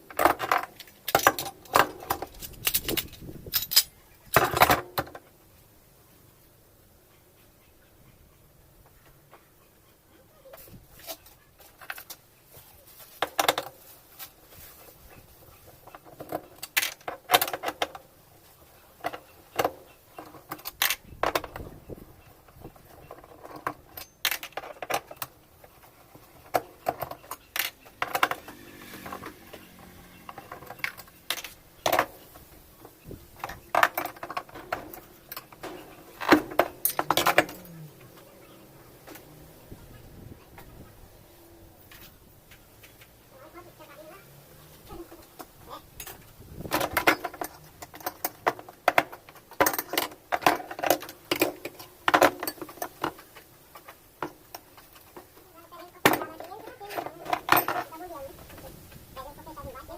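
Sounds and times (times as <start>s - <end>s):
metallic clicks and clinks: 0.1s - 4.7s, 33.4s - 38.3s.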